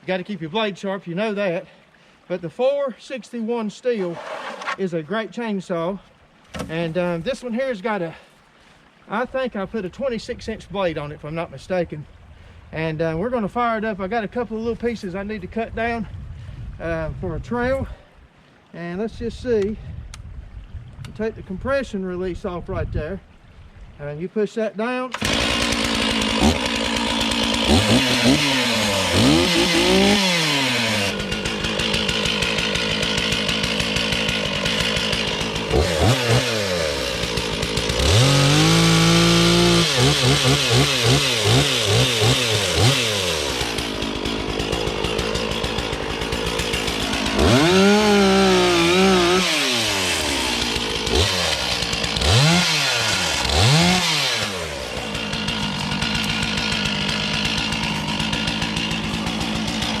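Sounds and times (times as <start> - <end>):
chainsaw revving and idling: 25.1 - 60.0.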